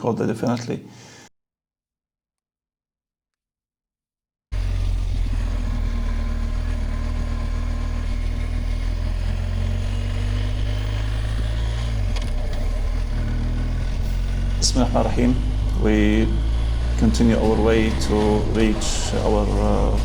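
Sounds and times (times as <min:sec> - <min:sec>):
motorcycle engine running: 0:04.6 - 0:20.0.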